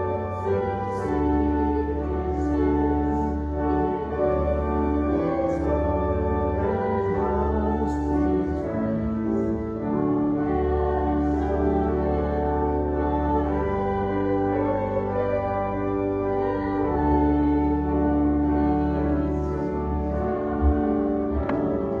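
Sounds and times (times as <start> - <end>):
organ playing slow chords: 0.0 - 22.0.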